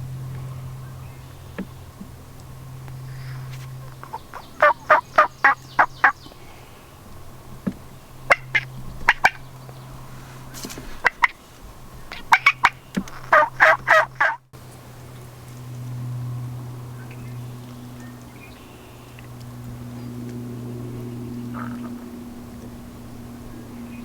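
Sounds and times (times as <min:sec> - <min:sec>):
turkey yelping: 0:03.1 - 0:06.3, 0:08.3 - 0:09.5, 0:11.0 - 0:11.4, 0:12.0 - 0:14.4, 0:21.4 - 0:22.7.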